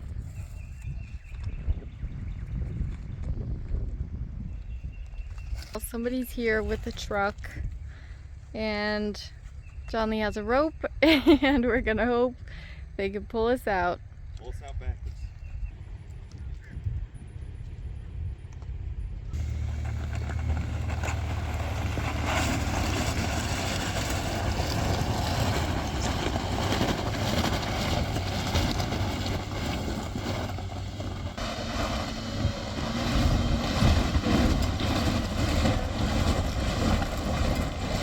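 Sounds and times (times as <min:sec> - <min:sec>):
vehicle engines running under load: 0:15.8 - 0:38.0.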